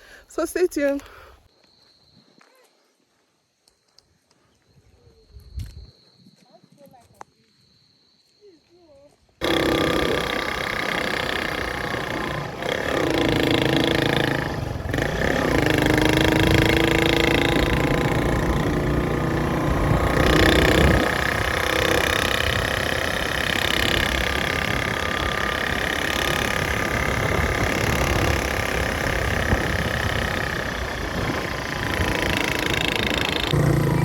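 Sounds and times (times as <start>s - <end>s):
vehicle engine running: 9.4s - 34.0s.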